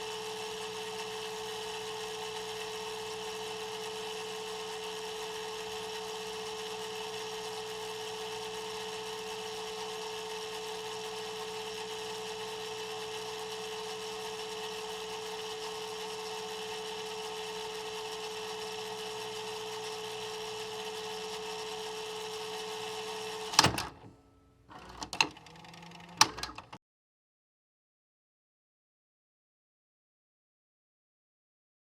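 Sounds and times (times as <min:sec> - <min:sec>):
tape rewinding motor whir: 0:00.0 - 0:24.1, 0:24.7 - 0:26.8
loud mechanical clunk: 0:23.5 - 0:24.1, 0:26.2 - 0:26.7
mechanical clicks: 0:23.5 - 0:24.1, 0:24.7 - 0:26.8.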